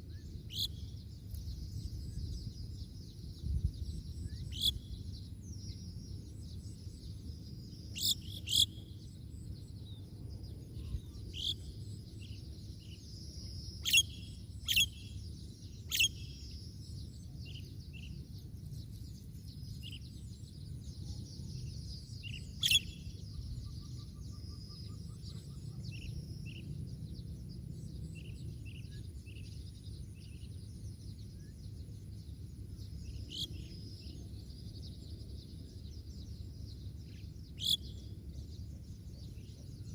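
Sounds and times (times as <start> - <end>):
low background rumble: 0.0 - 39.9
birds chirping: 0.1 - 39.9.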